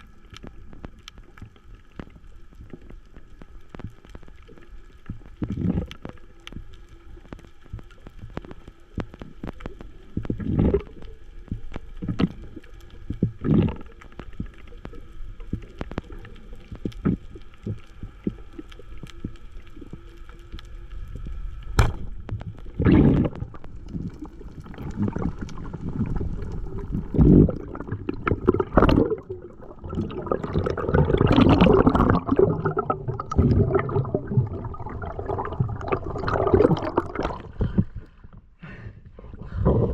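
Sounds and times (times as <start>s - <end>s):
faint steady hum: 0.0s - 39.9s
muffled underwater whooshes: 22.5s - 38.3s.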